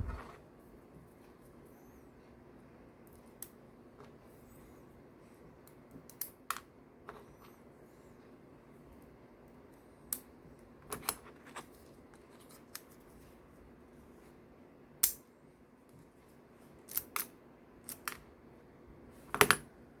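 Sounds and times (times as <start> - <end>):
small metallic clicks and snaps: 15.0 - 15.2, 16.9 - 17.3.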